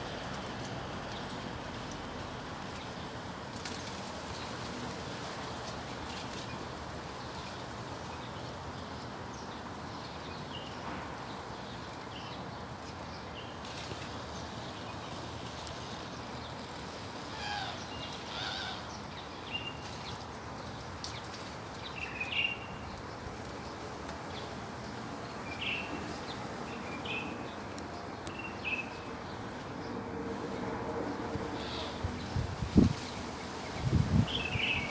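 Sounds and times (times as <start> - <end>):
strong wind blowing: 30.1 - 34.9.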